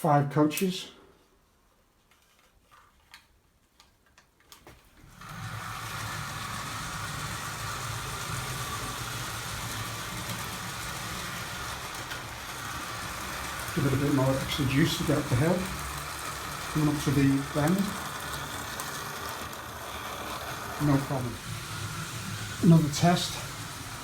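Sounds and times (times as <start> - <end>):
wheels rolling on track: 4.9 - 24.0
model train electric motor hum: 5.0 - 24.0.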